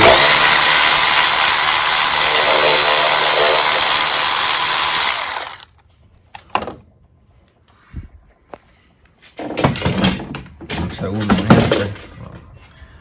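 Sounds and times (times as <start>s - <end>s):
power tool whining: 0.0s - 5.7s.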